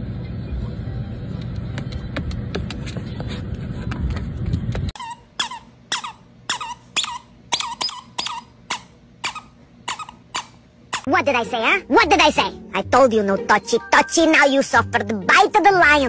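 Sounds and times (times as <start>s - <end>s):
squeaky dog toy squeaking: 5.0s - 11.2s.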